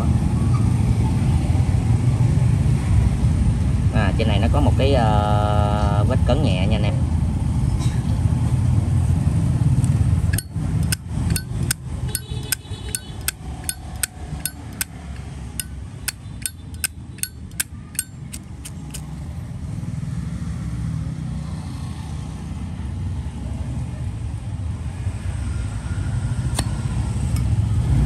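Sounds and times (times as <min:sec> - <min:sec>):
lighter lid metallic clicks: 0:10.3 - 0:14.9, 0:15.6 - 0:19.0.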